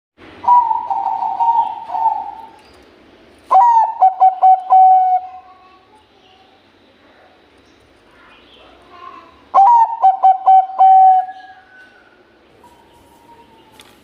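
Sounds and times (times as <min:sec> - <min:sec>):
dove cooing: 0:00.4 - 0:02.6, 0:03.5 - 0:05.4, 0:09.5 - 0:13.5.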